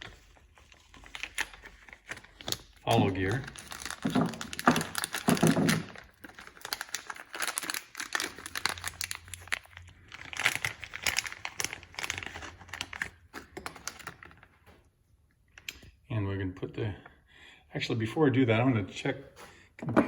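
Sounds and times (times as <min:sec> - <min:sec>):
packaging crinkling and rustling: 0:00.0 - 0:14.9.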